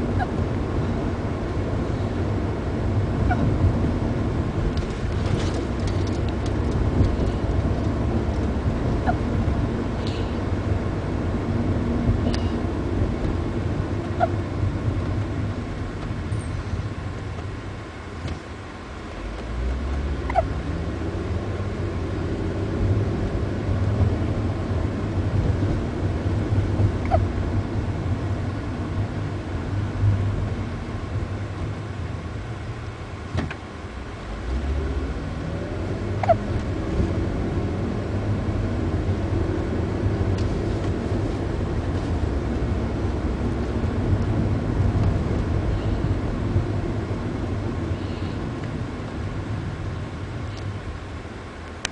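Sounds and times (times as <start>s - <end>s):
steady low rumble: 0.0s - 51.9s
sharp hiccups: 3.2s - 3.5s, 20.3s - 20.5s, 36.2s - 36.5s.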